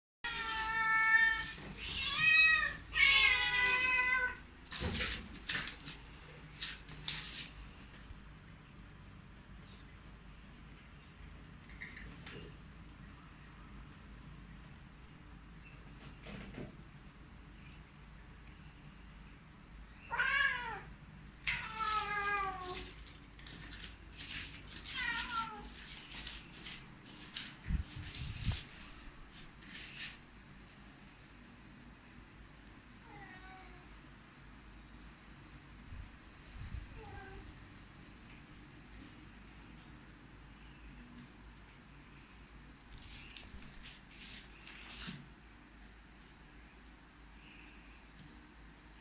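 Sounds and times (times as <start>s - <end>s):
cat meowing: 20.1s - 20.9s.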